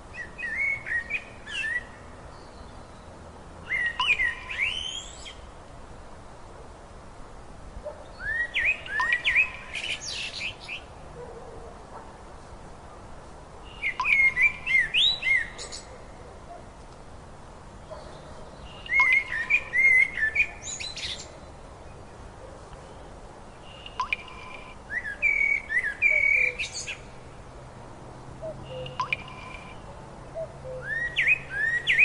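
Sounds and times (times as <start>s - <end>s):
faint background hiss: 0.0s - 32.0s
songbird warbling: 0.1s - 3.1s, 3.7s - 5.4s, 8.0s - 10.9s, 13.7s - 16.2s, 17.8s - 21.5s, 22.8s - 27.2s, 28.4s - 32.0s.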